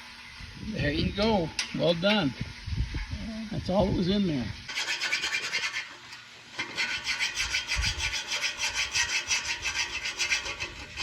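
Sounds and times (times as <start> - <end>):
hand scraping hard surface: 4.7 - 6.0.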